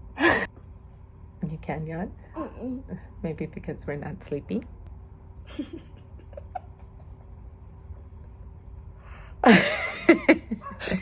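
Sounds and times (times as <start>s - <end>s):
faint breathing: 8.9s - 9.4s.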